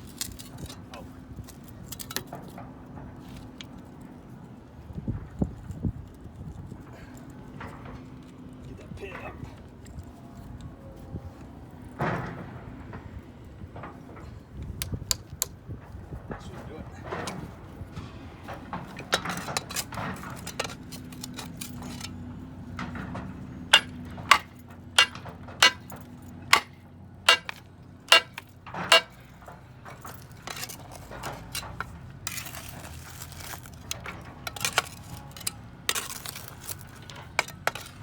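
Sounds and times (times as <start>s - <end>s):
steel clanking and scraping: 0.0s - 5.8s, 11.8s - 38.0s
metal-on-metal strikes: 23.7s - 29.2s.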